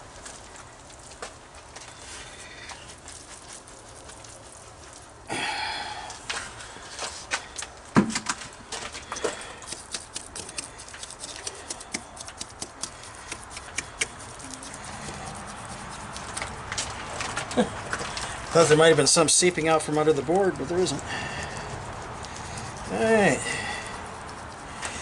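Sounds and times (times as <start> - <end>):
trowel scraping concrete: 8.7 - 25.0
trowel tapping: 9.2 - 14.1.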